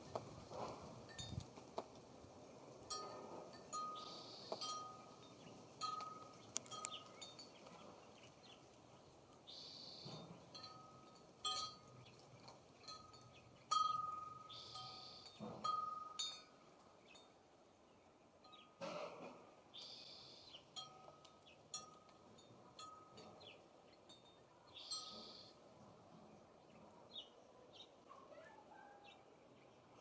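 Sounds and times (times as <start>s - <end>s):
wind chime ringing: 2.9s - 7.6s, 12.9s - 16.6s
short high bird calls: 4.0s - 5.1s, 9.5s - 10.2s, 14.3s - 15.4s, 24.7s - 25.6s.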